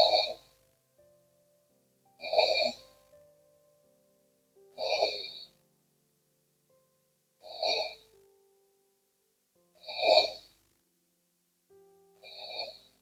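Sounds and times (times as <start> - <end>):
woman snoring: 0.0 - 0.5, 2.2 - 2.8, 4.8 - 5.5, 7.4 - 8.1, 9.8 - 10.5, 12.2 - 13.0.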